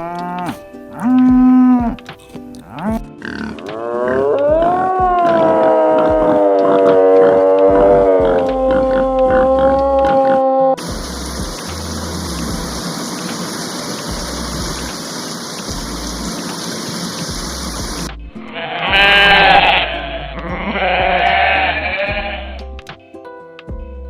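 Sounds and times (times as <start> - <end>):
sheep bleating: 0.0 - 3.0, 18.4 - 22.6
low repeating bass line music: 0.0 - 10.2, 10.8 - 13.0, 14.1 - 15.0, 15.6 - 16.4, 17.2 - 23.0, 23.7 - 24.0
steady hiss-like noise: 10.8 - 18.2.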